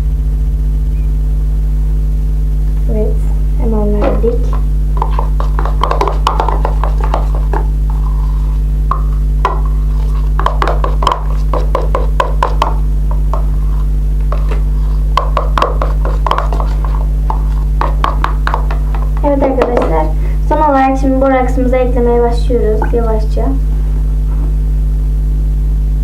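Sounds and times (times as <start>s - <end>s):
low electrical hum: 0.0s - 26.0s
spoon tapping and scraping bowl: 4.0s - 20.1s.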